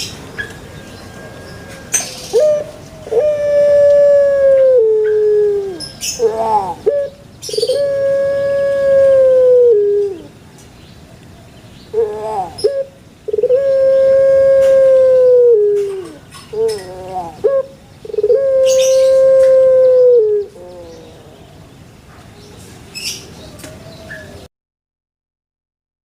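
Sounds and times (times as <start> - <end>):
animal wavering calls: 1.2 - 10.4, 11.9 - 21.4
animal howling: 2.3 - 6.8, 7.6 - 10.3, 13.4 - 17.4, 18.2 - 21.3.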